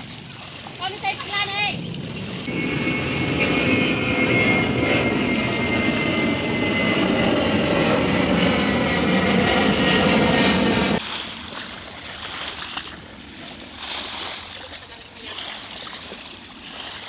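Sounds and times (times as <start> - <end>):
jet aircraft flying overhead: 0.0 - 11.0.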